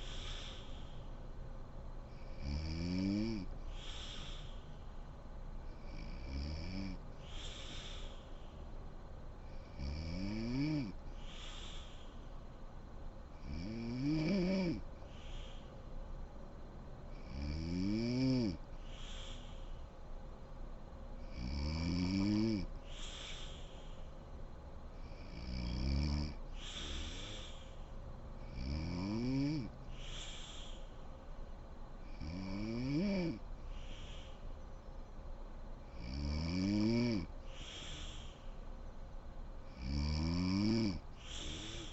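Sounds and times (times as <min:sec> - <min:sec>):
woman snoring: 0:02.2 - 0:04.4, 0:05.8 - 0:08.1, 0:09.5 - 0:11.8, 0:13.4 - 0:14.8, 0:17.2 - 0:18.6, 0:21.2 - 0:23.6, 0:25.0 - 0:27.8, 0:28.4 - 0:30.4, 0:32.1 - 0:33.4, 0:35.9 - 0:38.0, 0:39.7 - 0:41.9.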